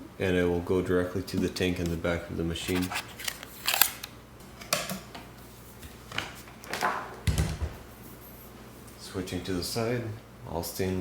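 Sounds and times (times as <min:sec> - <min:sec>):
machine handling clicks and scrapes: 0:02.7 - 0:04.1.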